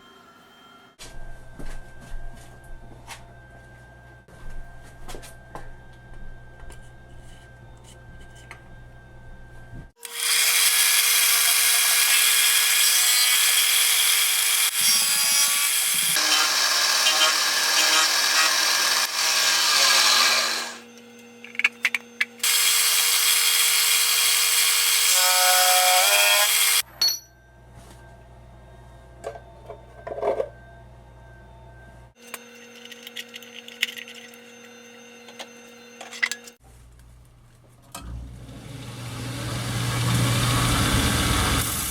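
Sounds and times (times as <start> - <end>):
power tool rasping: 10.0 - 20.8, 22.4 - 26.8.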